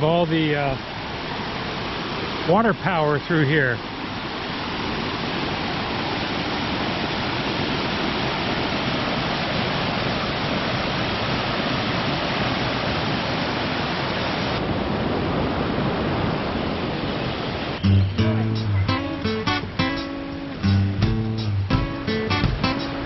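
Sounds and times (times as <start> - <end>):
mountain stream rushing: 0.0 - 23.0.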